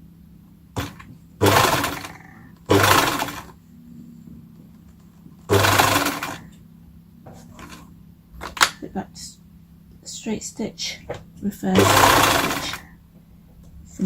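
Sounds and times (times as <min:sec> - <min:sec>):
sewing machine stitching: 0:00.7 - 0:03.6, 0:05.4 - 0:06.6, 0:07.3 - 0:08.6, 0:11.1 - 0:13.0.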